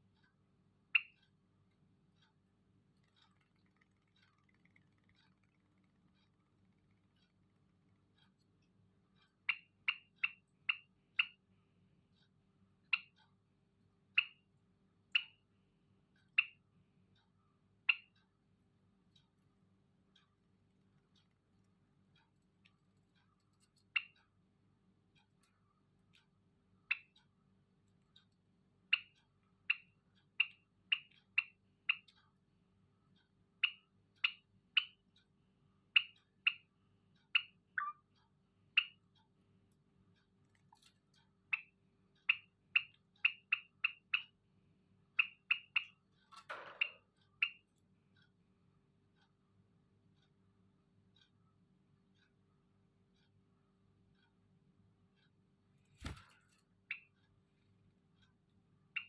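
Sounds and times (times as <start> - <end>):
faint steady low hum: 0.0 - 59.0
finches chirping: 0.9 - 1.4, 2.9 - 11.4, 22.4 - 24.3, 26.8 - 27.2, 37.3 - 39.0, 41.5 - 44.4, 45.1 - 47.7.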